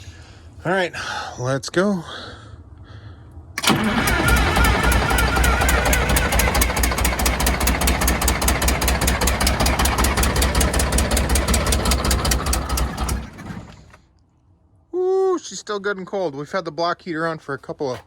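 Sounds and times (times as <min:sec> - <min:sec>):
rapid even ticking: 0:03.6 - 0:13.2
diesel engine running: 0:03.6 - 0:14.0.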